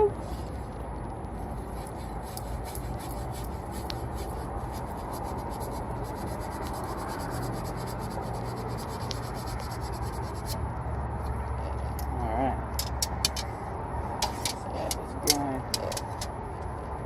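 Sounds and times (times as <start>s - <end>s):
sanding copper tube rasping: 1.6s - 10.6s.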